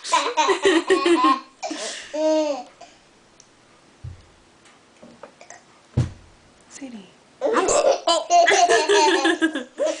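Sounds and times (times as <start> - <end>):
soft thump: 5.9 - 6.3
person laughing: 8.5 - 10.0.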